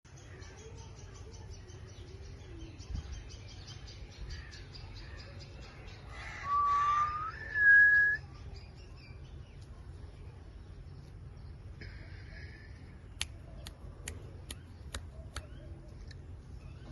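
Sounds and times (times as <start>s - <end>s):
loud clear whistles: 6.4s - 8.2s.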